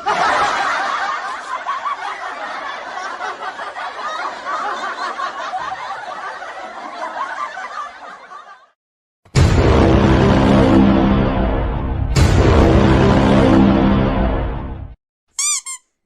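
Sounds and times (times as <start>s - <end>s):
audience laughing: 0.0s - 8.8s
loud burst of music: 9.4s - 14.9s.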